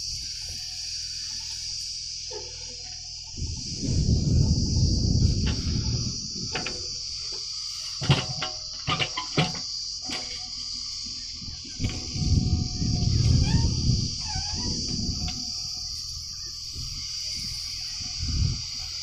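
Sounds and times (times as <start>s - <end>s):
crickets chirring: 0.0s - 19.0s
loud low rumble: 3.2s - 7.2s, 11.4s - 17.1s.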